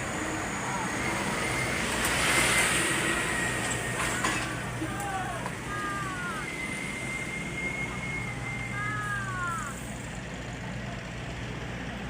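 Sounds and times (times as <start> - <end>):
diesel machinery running: 0.0 - 12.0
thin high whine: 0.6 - 10.0.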